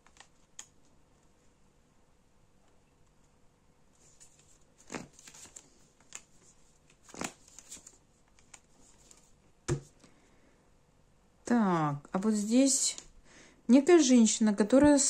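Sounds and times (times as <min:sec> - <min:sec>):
cards rustling and sliding: 0:04.0 - 0:10.1.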